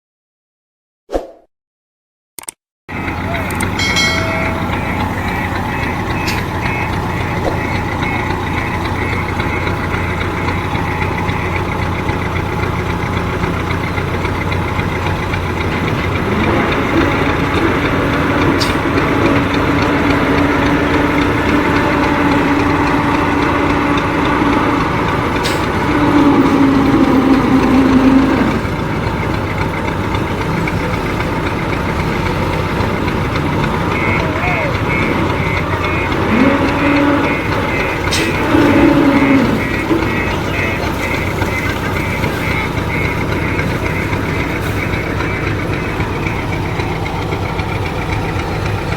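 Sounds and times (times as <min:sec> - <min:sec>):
short clicks: 0:02.4 - 0:02.6
diesel construction machinery running: 0:02.9 - 0:48.9
strong hum: 0:02.9 - 0:48.9.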